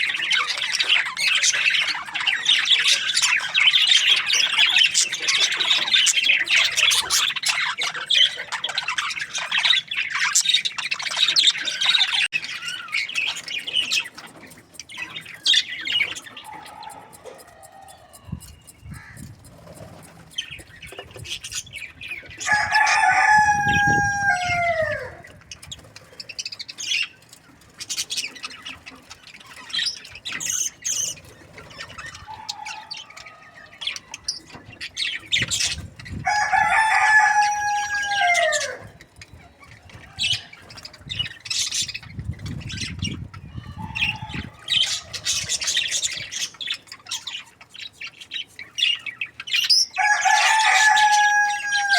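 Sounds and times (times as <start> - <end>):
small birds chirping: 0.0 - 51.9
rooster crowing: 16.5 - 19.2, 22.4 - 25.2, 36.2 - 39.0, 43.6 - 45.5, 50.0 - 51.9.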